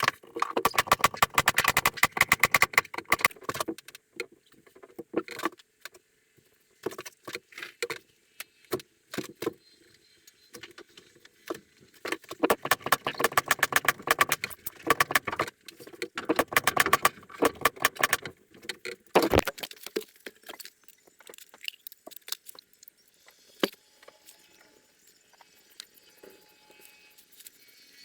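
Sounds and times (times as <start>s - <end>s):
sharp clicks: 0.0s - 3.7s, 12.5s - 15.5s, 16.3s - 18.3s
small hard objects clattering: 12.0s - 22.8s.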